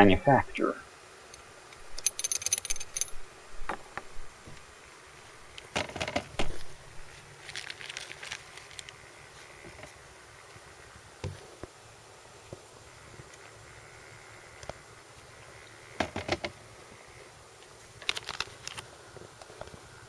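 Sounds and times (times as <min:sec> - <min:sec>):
small hard objects clicking: 0:18.0 - 0:18.8.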